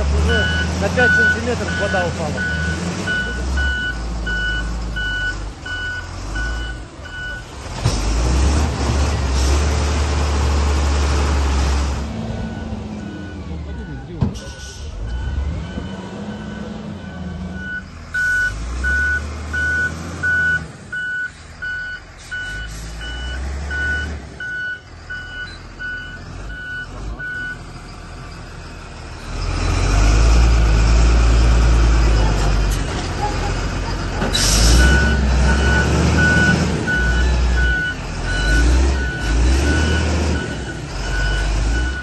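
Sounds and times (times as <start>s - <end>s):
heavy machinery engine: 0.0s - 42.0s
reversing alarm beeping: 0.3s - 7.5s, 12.4s - 28.4s, 34.4s - 42.0s.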